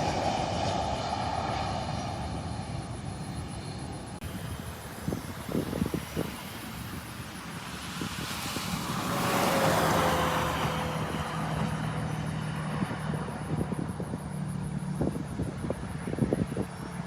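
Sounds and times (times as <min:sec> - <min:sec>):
jet airliner passing: 0:00.0 - 0:17.0.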